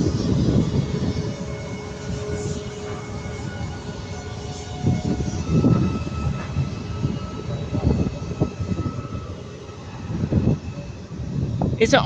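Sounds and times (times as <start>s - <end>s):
faint whining tones: 0.0s - 12.0s
locomotive deep rumble: 0.0s - 12.0s.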